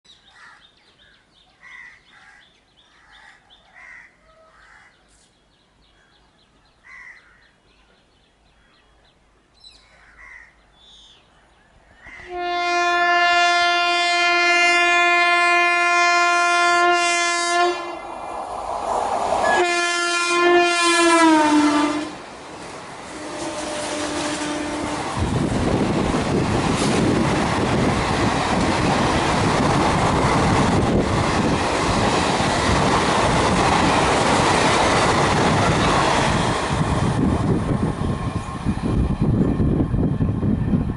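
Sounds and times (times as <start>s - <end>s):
rush of passing train noise: 12.0s - 40.9s
locomotive horn blast: 12.2s - 18.1s, 19.4s - 22.2s, 23.1s - 25.3s.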